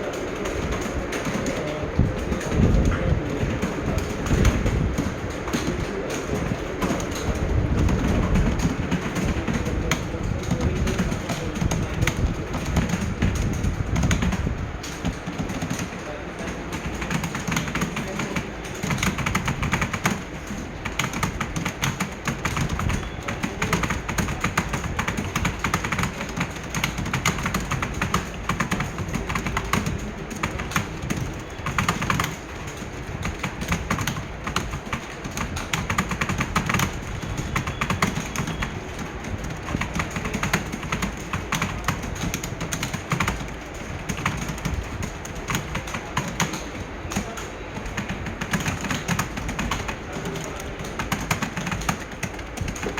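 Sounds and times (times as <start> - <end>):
fast typing on keyboards: 0.0 - 52.9.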